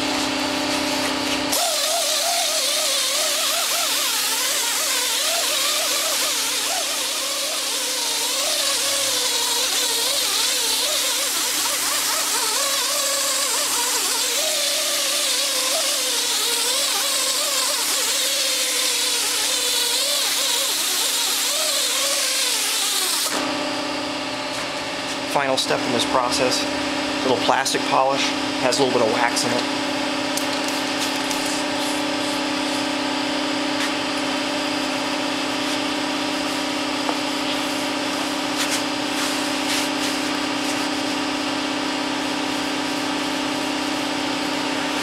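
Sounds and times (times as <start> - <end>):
power polisher motor humming: 1.2 - 23.5.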